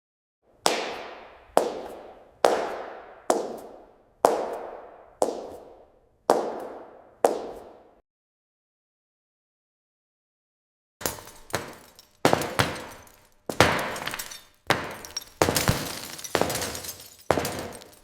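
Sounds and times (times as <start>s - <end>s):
high-heel footsteps on hard floor: 0.7s - 8.0s, 11.0s - 18.0s.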